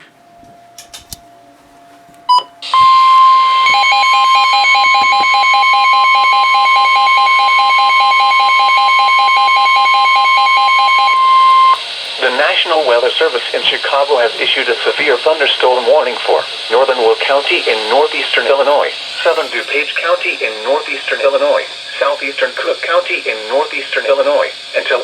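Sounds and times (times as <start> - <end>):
short beep: 2.3 - 7.0, 9.6 - 11.8
fast pulsing alarm beep: 2.3 - 11.9.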